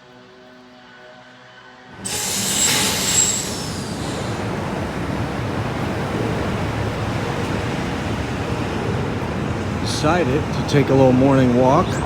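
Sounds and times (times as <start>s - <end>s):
bus passing: 0.1s - 12.0s
street traffic: 1.9s - 12.0s
hiss: 2.0s - 4.6s.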